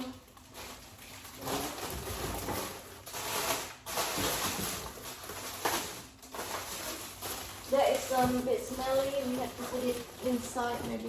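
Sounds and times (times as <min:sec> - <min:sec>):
groceries rustling in packaging: 0:00.0 - 0:11.0.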